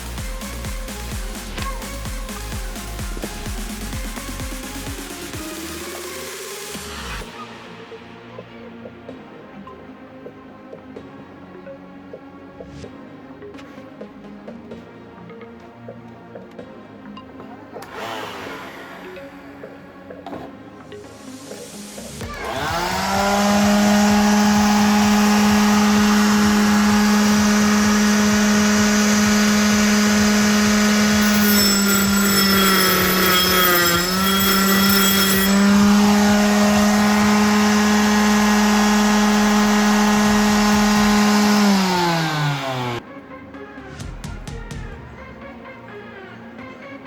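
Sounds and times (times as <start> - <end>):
small electric motor whining: 22.2 - 43.0.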